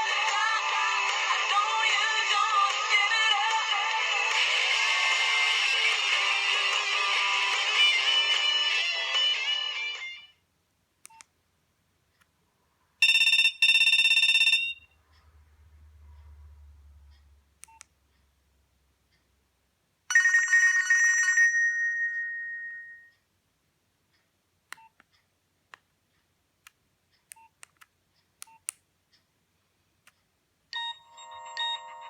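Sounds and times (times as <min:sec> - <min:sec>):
phone ringtone: 0:13.0 - 0:14.9, 0:20.1 - 0:23.1, 0:30.8 - 0:32.0
keypad clicks: 0:24.7 - 0:25.8, 0:26.6 - 0:28.8.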